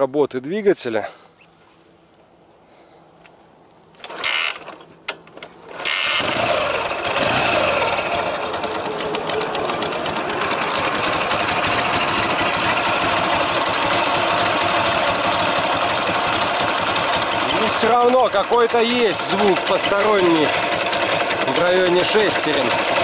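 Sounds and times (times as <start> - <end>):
motorcycle engine cranking: 4.0 - 23.0
rattling engine gear noise: 4.0 - 23.0
motorcycle engine idling: 5.6 - 23.0.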